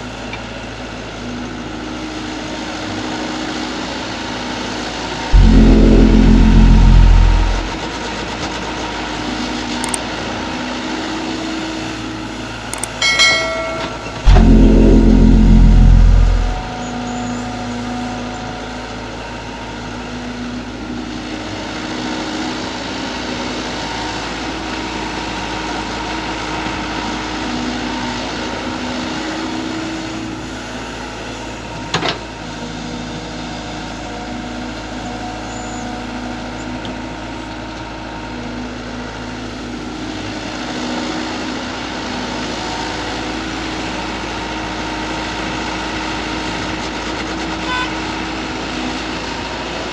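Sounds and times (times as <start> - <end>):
loud low rumble: 5.3 - 7.9, 13.9 - 16.8
sharp click: 12.8 - 16.7.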